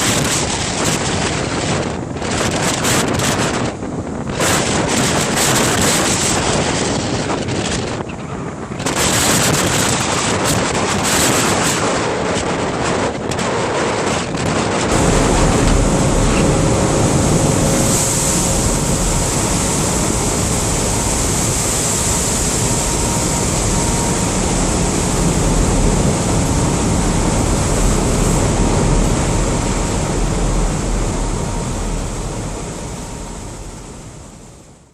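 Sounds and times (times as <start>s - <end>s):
wind buffeting microphone: 0.0s - 34.8s
rushing wind: 0.0s - 34.9s
sea noise: 0.0s - 34.9s
deep steady rumble: 14.5s - 34.9s.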